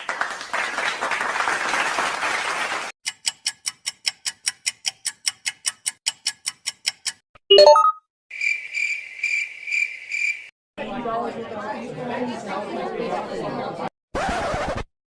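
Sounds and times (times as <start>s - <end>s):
applause: 0.0s - 2.9s
fast even ticking: 3.0s - 7.2s.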